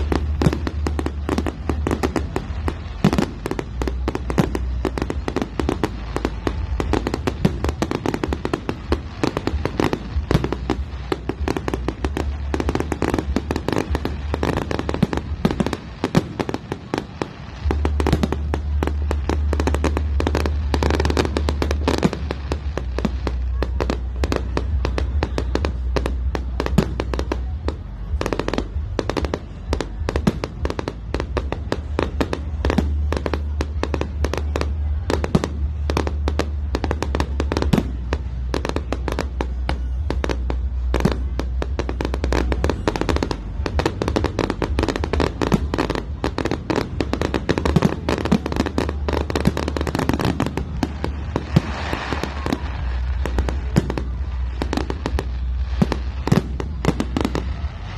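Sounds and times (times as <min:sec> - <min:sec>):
fireworks bangs and crackling: 0:00.0 - 0:57.9
music with steady bass: 0:00.0 - 0:57.9.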